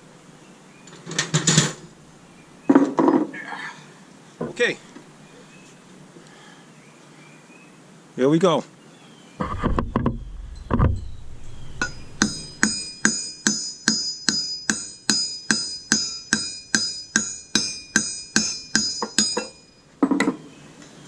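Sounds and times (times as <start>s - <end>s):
hammer striking metal rod: 10.2s - 20.4s.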